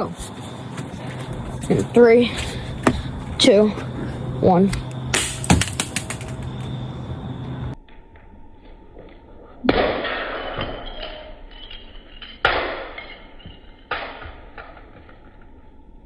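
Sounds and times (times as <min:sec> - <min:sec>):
plastic cube hitting ground: 0:05.2 - 0:06.6.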